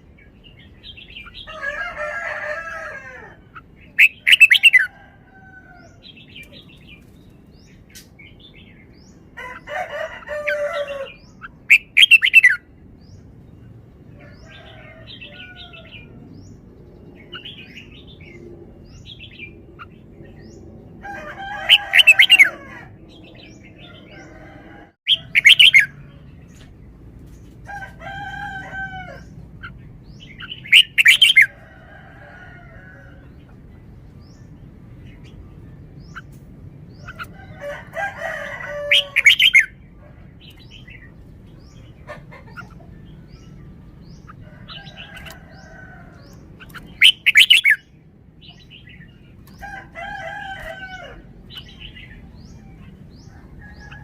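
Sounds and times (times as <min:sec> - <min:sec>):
bulbul singing: 0:25.1 - 0:26.3, 0:29.1 - 0:31.5, 0:40.6 - 0:49.9.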